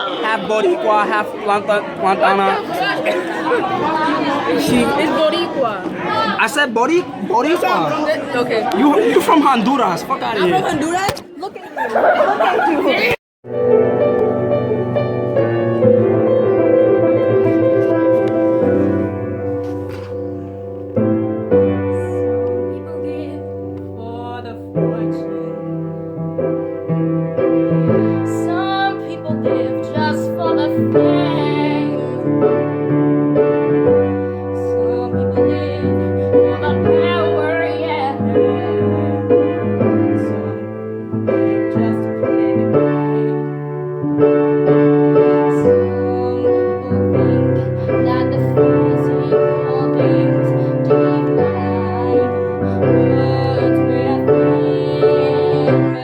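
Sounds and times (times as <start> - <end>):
piano background music: 13.4 - 56.0.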